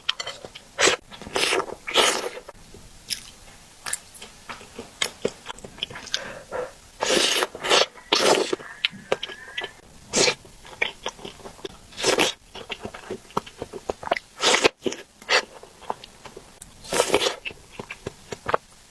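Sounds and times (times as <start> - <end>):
loud noisy eating bursts: 0.8 - 2.6, 4.2 - 16.0, 16.8 - 18.6
chewing with wet mouth clicks: 3.1 - 6.3, 7.0 - 18.6.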